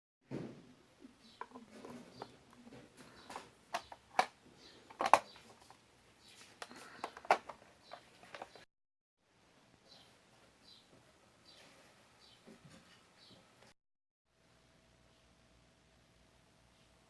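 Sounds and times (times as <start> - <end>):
hands clicking plastic parts: 1.4 - 5.8, 6.6 - 8.6.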